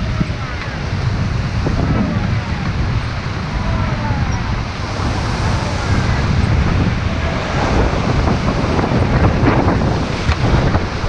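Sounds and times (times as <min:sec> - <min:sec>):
wind buffeting microphone: 0:00.0 - 0:11.0
whitewater rushing and splashing: 0:03.2 - 0:11.0.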